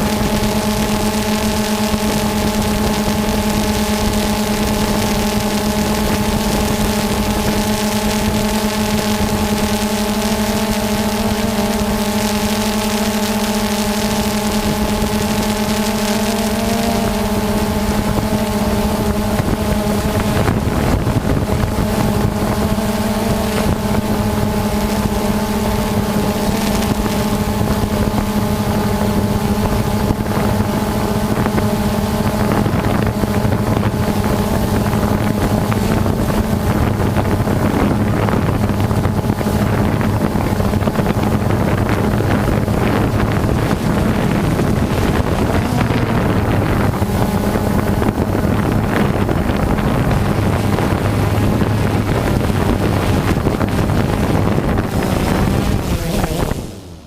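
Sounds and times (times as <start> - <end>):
drone propellers buzzing: 0.0 - 57.0
wind on microphone: 0.0 - 57.0.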